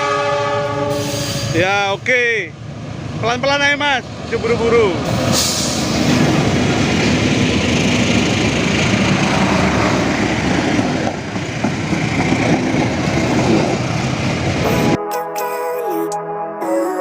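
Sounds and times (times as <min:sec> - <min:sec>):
train passing close: 0:00.0 - 0:15.0.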